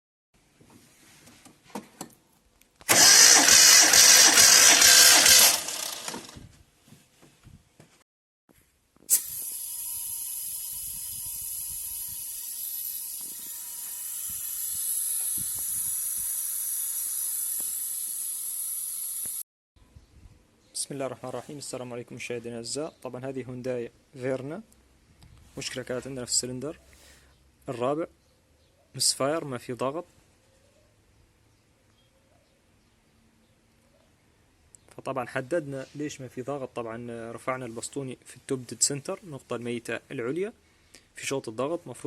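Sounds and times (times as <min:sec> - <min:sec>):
car engine turning over: 0:02.9 - 0:06.4
steady hiss with high tone: 0:09.1 - 0:19.4.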